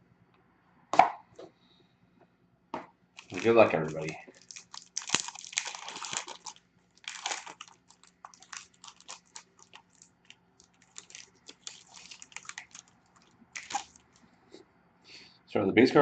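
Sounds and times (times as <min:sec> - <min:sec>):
packaging being torn open: 0:03.2 - 0:14.1
cards crinkling and rustling: 0:03.2 - 0:14.2.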